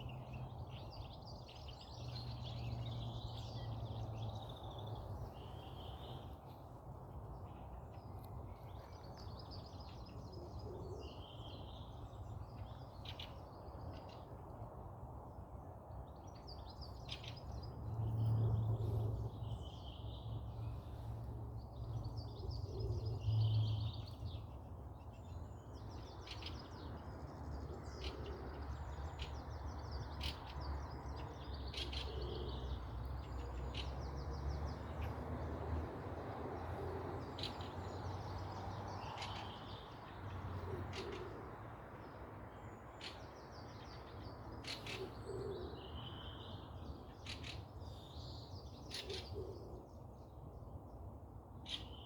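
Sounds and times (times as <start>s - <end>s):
low hooting or cooing calls: 44.8s - 46.1s.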